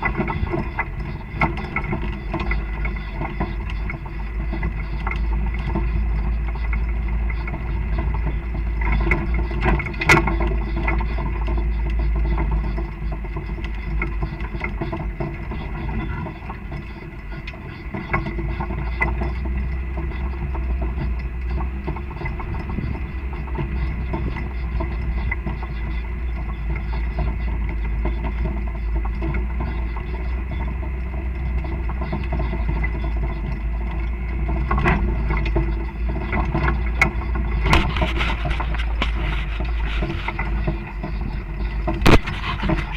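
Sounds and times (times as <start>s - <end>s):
vehicle engine running: 0.0s - 42.9s
heavy low rumble: 18.6s - 42.9s.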